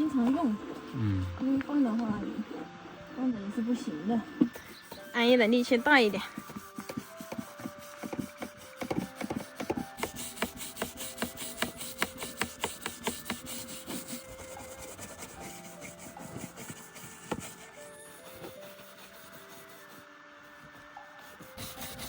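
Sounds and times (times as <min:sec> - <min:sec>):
hand scrubbing surfaces: 0:04.3 - 0:20.1, 0:20.8 - 0:22.0.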